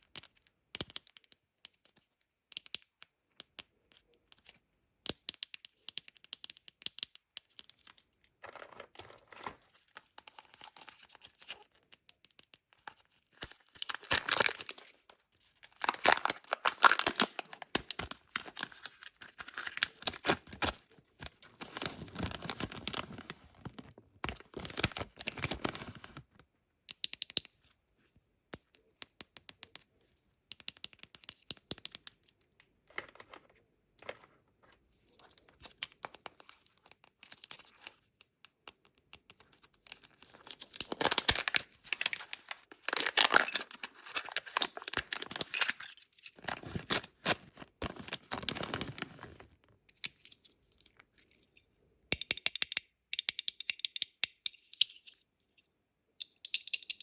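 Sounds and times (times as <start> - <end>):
plastic foil wrapper tearing: 13.4 - 15.0, 15.7 - 23.1, 40.0 - 49.4.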